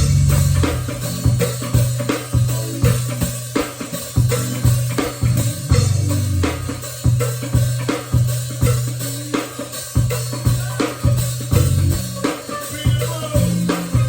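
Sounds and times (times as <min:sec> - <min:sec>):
deep bass line: 0:00.0 - 0:03.4, 0:04.2 - 0:06.9, 0:11.5 - 0:12.2
drum kit beat: 0:00.0 - 0:14.0.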